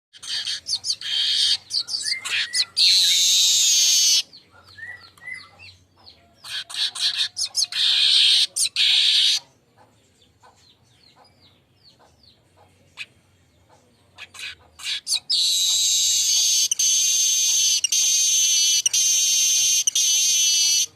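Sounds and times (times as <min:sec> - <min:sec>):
weaver bird chattering chirps: 0:00.2 - 0:09.4, 0:14.2 - 0:20.9
bird wheezy buzzes: 0:15.4 - 0:20.9.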